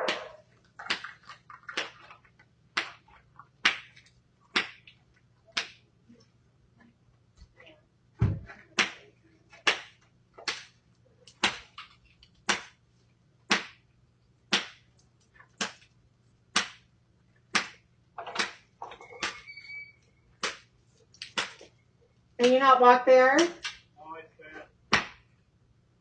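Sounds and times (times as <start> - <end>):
short high squeak: 19.0 - 20.2.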